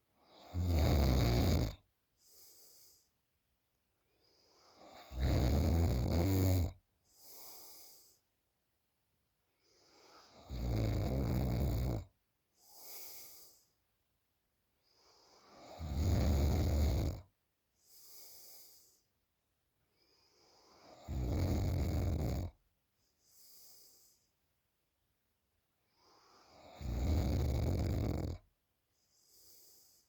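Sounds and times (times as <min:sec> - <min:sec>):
woman snoring: 0:00.3 - 0:01.8, 0:04.6 - 0:08.0, 0:09.9 - 0:13.6, 0:15.2 - 0:17.3, 0:20.4 - 0:22.6, 0:26.0 - 0:28.4
soft breath: 0:02.2 - 0:03.2, 0:07.0 - 0:08.4, 0:12.5 - 0:13.8, 0:17.8 - 0:19.2, 0:23.0 - 0:24.4, 0:28.9 - 0:30.0.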